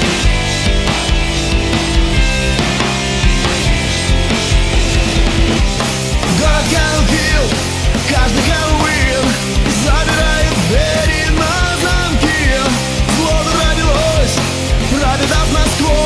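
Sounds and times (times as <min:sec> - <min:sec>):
bending melodic lead line: 0:00.0 - 0:12.3
distorted rock band with drums: 0:00.0 - 0:16.0.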